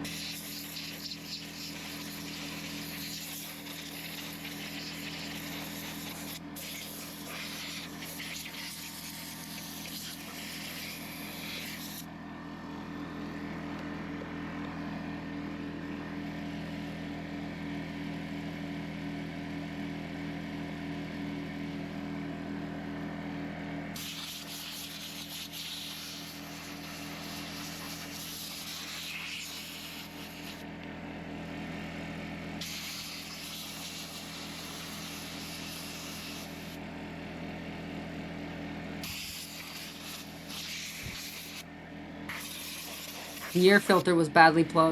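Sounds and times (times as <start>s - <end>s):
blow gun hissing: 0.0s - 12.1s, 24.0s - 30.6s, 32.6s - 36.8s, 39.0s - 41.6s, 42.3s - 44.1s
air compressor humming: 0.0s - 16.6s, 23.1s - 31.5s, 32.5s - 44.9s.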